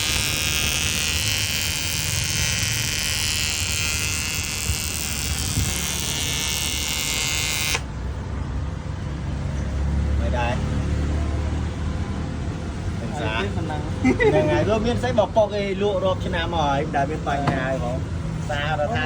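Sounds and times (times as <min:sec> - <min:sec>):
buzzing hiss of welding arc: 0:00.0 - 0:07.9.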